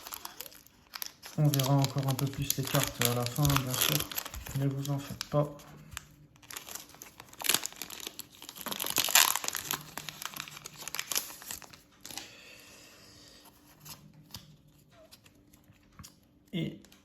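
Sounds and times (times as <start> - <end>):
foil wrapper crinkling and tearing: 0.0 - 12.2.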